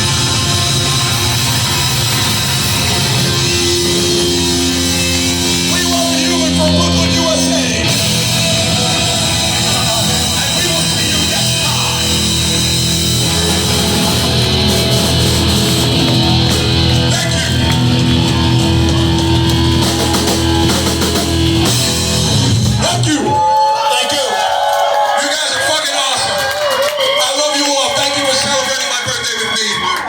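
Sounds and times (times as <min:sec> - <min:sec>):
bass guitar: 0:00.0 - 0:23.4
distorted electric guitars: 0:00.0 - 0:23.6
drums: 0:00.0 - 0:23.8, 0:24.4 - 0:30.0.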